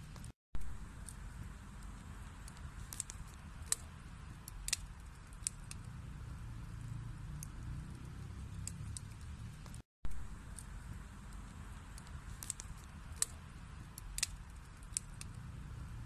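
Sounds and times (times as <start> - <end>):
wood crackling and popping: 0.0 - 15.8
fire flames rumbling: 0.0 - 16.0.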